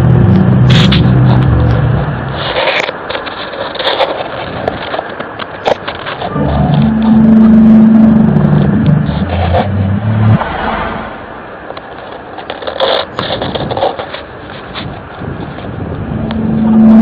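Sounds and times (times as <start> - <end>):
clicks and clatter: 0.6 - 9.7, 11.6 - 17.0
low droning hum: 5.7 - 11.6, 15.5 - 17.0.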